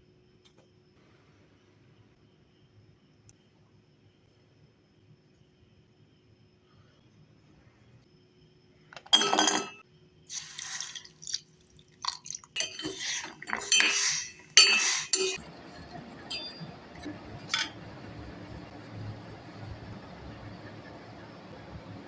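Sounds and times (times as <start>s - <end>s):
utensils clinking in a bowl: 9.0s - 11.4s, 12.0s - 15.4s, 17.4s - 17.8s
pouring: 10.3s - 15.3s
low steady hum: 11.0s - 22.0s.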